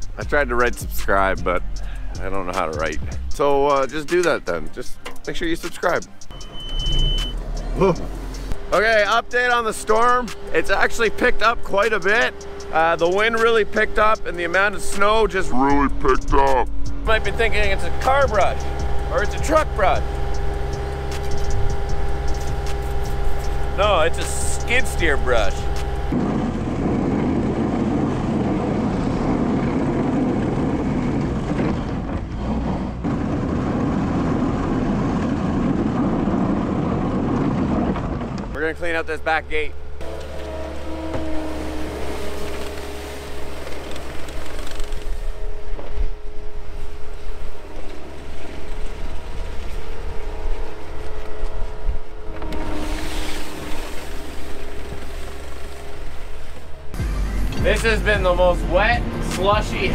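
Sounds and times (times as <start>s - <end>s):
skid steer engine running: 17.1s - 59.9s
rotary brush sweeping snow: 17.3s - 26.0s, 40.1s - 51.8s, 52.7s - 56.7s
brush rushing through snow: 40.2s - 45.8s, 52.6s - 56.9s.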